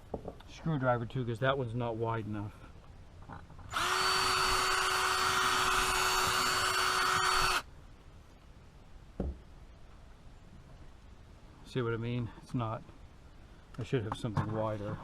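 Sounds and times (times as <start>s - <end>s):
power drill running: 3.7s - 7.7s
single knock: 9.2s - 9.4s.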